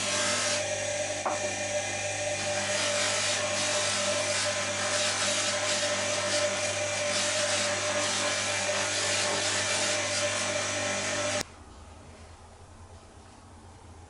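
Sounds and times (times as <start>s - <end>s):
power tool rasping: 0.0s - 1.6s, 2.3s - 11.4s.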